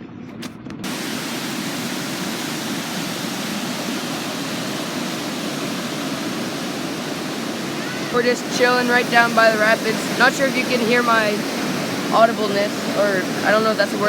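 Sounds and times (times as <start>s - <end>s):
rush of river rapids: 0.8s - 14.0s.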